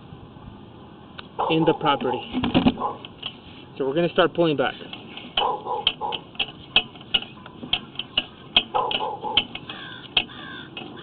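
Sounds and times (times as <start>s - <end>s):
inspection cable clicking: 4.9s - 11.0s.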